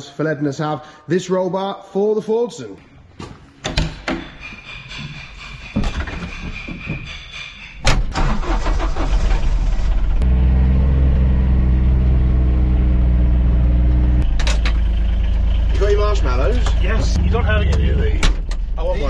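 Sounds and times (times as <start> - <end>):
tractor engine starting: 7.8 - 19.0.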